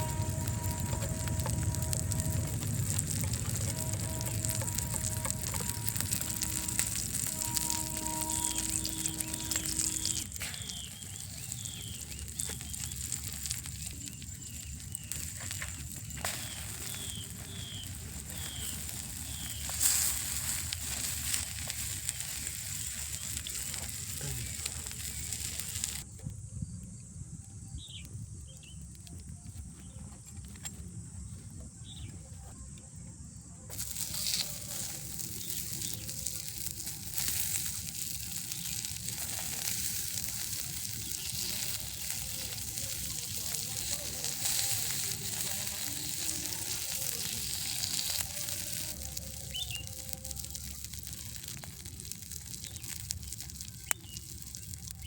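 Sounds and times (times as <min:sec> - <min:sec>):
bird chirping: 0:00.0 - 0:20.1
food sizzling in oil: 0:00.0 - 0:26.1, 0:33.7 - 0:55.0.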